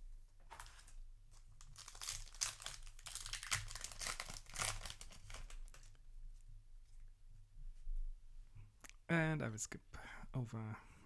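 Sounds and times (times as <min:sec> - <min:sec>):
foil wrapper crinkling and tearing: 0:00.5 - 0:06.0.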